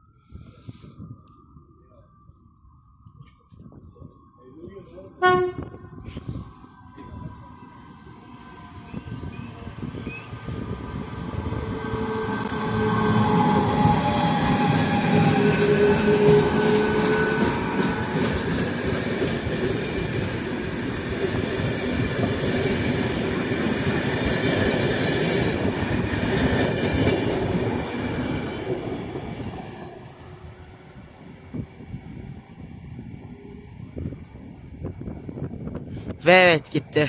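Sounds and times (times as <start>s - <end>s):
train wheels rushing on rail: 7.0s - 35.9s.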